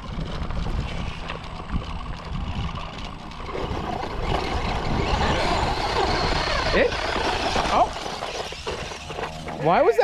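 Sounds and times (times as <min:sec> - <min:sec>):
remote control car on dirt: 0:00.0 - 0:10.0.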